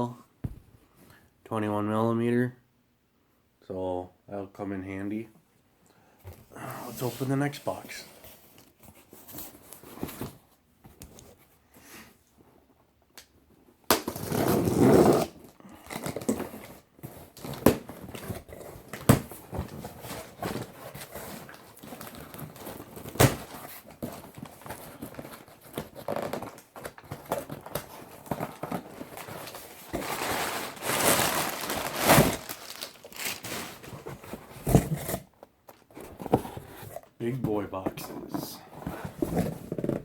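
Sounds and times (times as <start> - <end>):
cardboard and tape tearing: 13.9 - 35.3.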